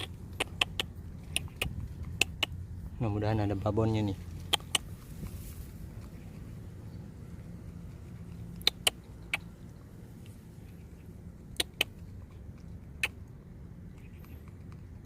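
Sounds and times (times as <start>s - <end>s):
sharp clicks: 0.0s - 2.6s
low steady rumble: 0.0s - 15.0s.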